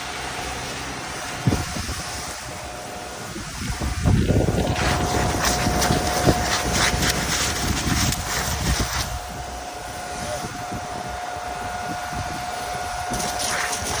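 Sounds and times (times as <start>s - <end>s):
fire roaring: 0.0s - 14.0s
steady high whine: 0.0s - 14.0s
fire crackling: 1.0s - 10.1s.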